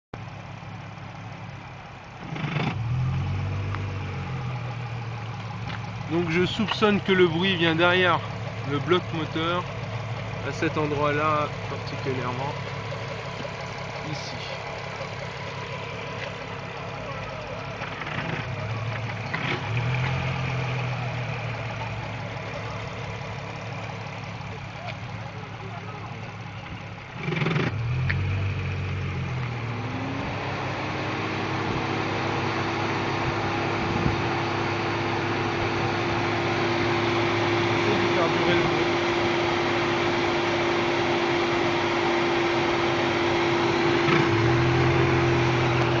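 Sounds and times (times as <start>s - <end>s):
car engine idling: 0.1s - 46.0s
steady whine: 29.3s - 46.0s.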